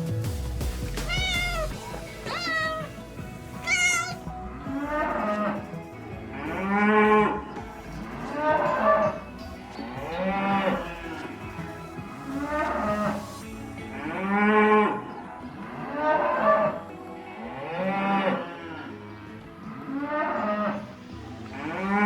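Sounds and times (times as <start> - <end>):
cat meowing: 1.0 - 2.9, 3.6 - 4.2.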